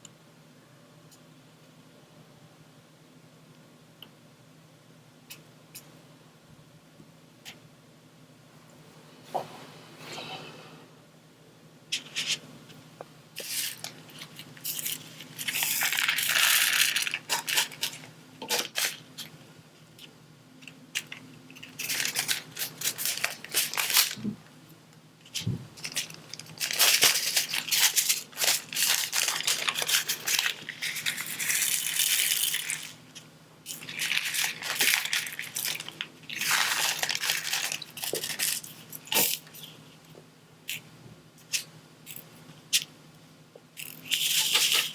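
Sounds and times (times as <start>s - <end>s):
plastic film crinkling and peeling: 13.4s - 19.3s, 20.9s - 24.4s, 25.3s - 39.8s, 43.8s - 44.9s.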